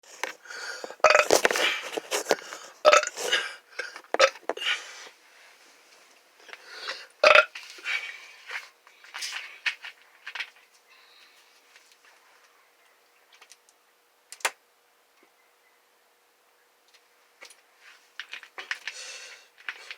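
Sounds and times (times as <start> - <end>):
person burping: 1.0 - 1.3, 2.8 - 3.6, 4.2 - 4.4, 7.2 - 7.5.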